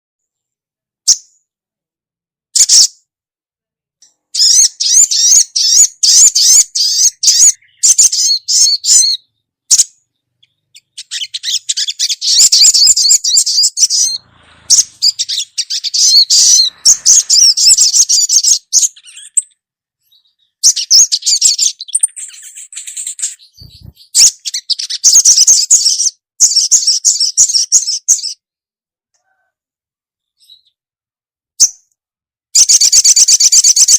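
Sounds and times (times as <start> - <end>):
bird rapid high chirps: 2.6 - 3.0, 4.1 - 28.4, 32.6 - 33.9.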